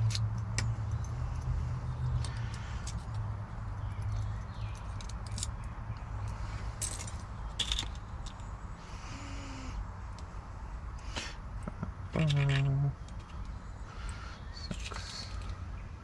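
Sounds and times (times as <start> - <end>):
clicks and taps of lock parts: 4.0 - 6.1.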